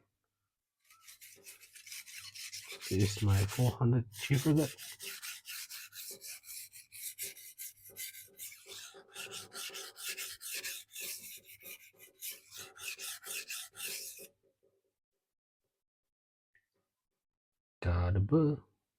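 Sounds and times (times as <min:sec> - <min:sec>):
knife scraping on sharpening stone: 0:00.9 - 0:14.3.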